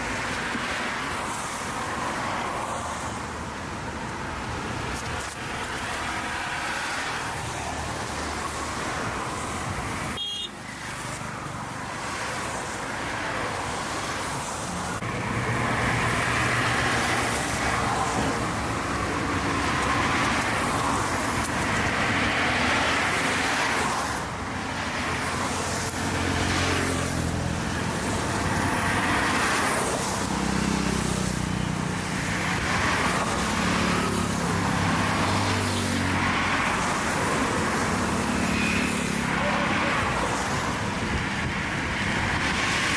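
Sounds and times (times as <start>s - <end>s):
traffic passing: 0.0s - 42.9s
car horn tooting: 10.2s - 10.6s.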